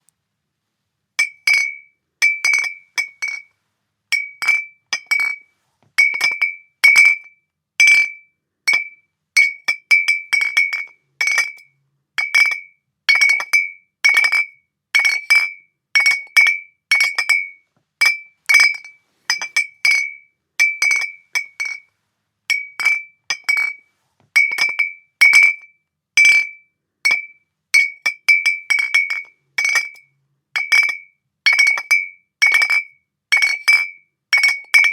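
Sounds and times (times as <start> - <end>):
glass bottles clinking: 1.2 - 3.5, 4.2 - 5.4, 8.7 - 11.6, 13.2 - 21.8, 22.5 - 23.8, 24.4 - 25.6, 27.1 - 30.0, 30.6 - 34.9.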